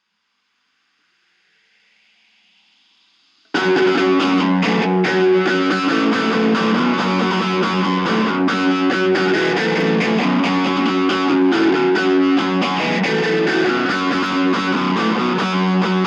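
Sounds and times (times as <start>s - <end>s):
distorted electric guitar music: 3.5s - 16.0s.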